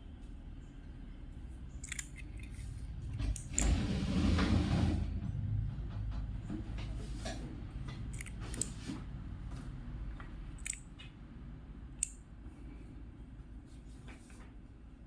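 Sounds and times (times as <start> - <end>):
low steady hum: 0.0 - 7.0
mechanical key switches clicking: 1.8 - 2.5, 8.1 - 8.7, 10.6 - 10.9.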